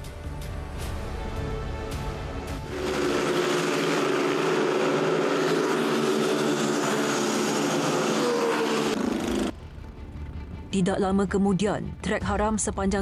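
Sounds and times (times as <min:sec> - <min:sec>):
motorcycle engines at high revs: 0:02.7 - 0:09.5.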